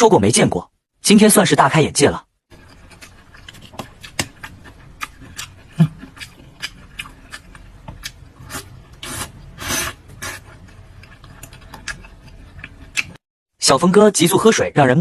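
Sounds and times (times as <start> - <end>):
bones crunching while chewed: 2.5 - 8.9, 10.4 - 13.2.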